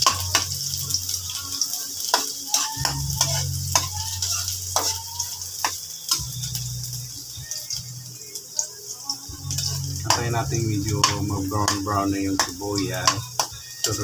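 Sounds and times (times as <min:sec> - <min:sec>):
spatula scraping a pan: 0:00.0 - 0:00.6, 0:02.1 - 0:06.6
onions sizzling in a frying pan: 0:00.0 - 0:14.0.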